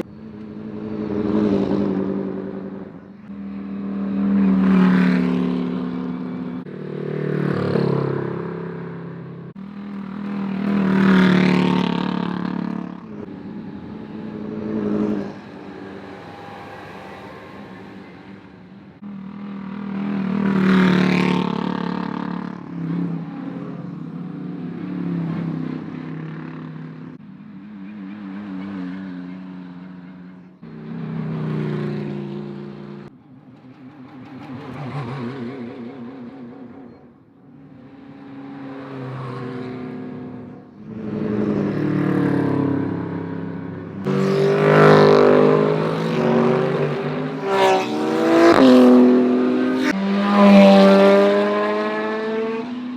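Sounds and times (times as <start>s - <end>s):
racing car engines accelerating: 0.0s - 52.9s.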